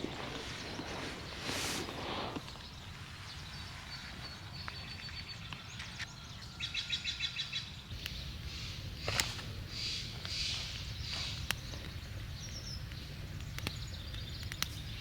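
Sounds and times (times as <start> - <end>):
birds calling: 0.0 - 15.0
faint outdoor hiss: 0.0 - 15.0
bird chirps: 2.5 - 15.0.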